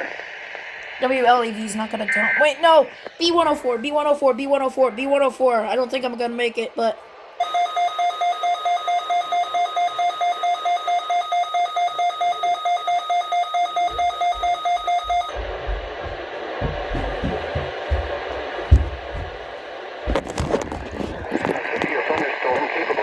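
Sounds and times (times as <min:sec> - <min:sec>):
radio hiss: 0:00.0 - 0:07.4, 0:17.6 - 0:23.0
rapid pulsing alert beep: 0:07.4 - 0:15.4
low thumps: 0:13.8 - 0:21.3.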